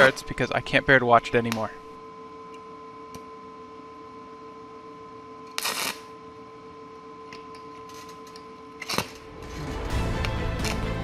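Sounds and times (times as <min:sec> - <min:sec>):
steady hum: 0:00.0 - 0:11.0
welding electrode crackling burst: 0:05.5 - 0:06.1.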